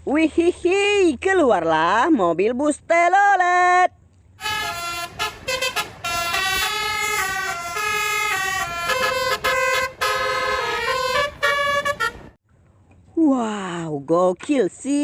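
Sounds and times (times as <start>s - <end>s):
bus horn playing a tune: 4.4s - 12.4s.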